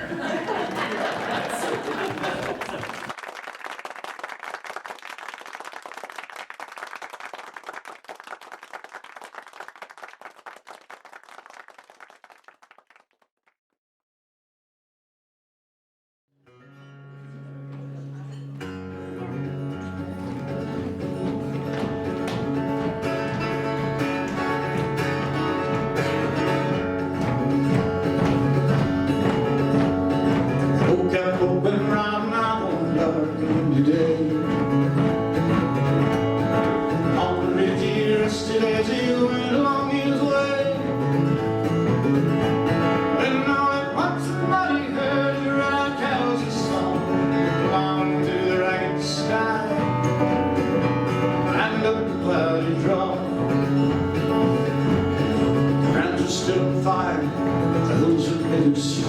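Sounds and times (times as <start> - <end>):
small audience clapping: 0.0 - 13.6, 17.6 - 43.8
acoustic guitar chords: 16.4 - 59.0.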